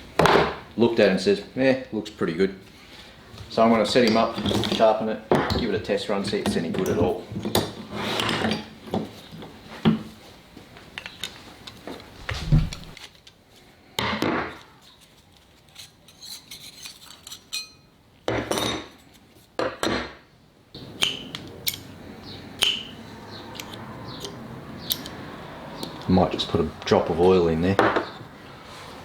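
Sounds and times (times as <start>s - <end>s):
metal plane parts clinking: 15.7s - 17.9s, 20.8s - 22.0s, 22.6s - 25.2s.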